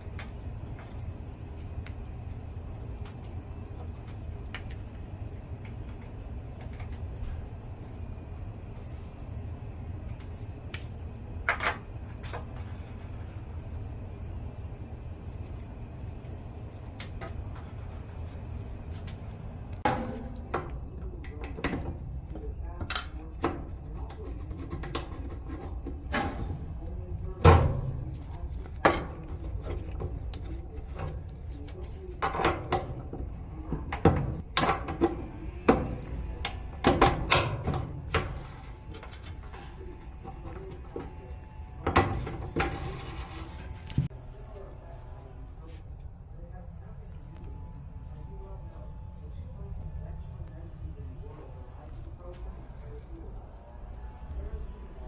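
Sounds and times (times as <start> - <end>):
steady low hum: 0.0 - 55.0
dryer parts knocking and clattering: 16.7 - 44.1.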